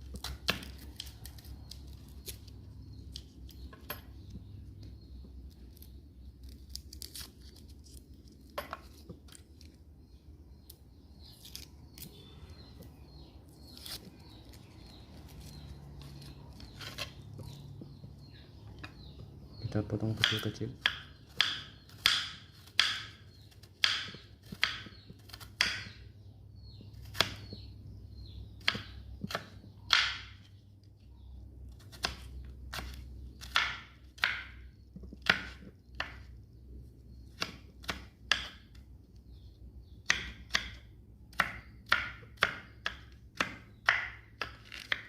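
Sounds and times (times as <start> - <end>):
knife chopping on board: 20.0 - 26.0, 28.6 - 30.4, 31.9 - 36.2, 37.3 - 38.6, 40.0 - 45.0.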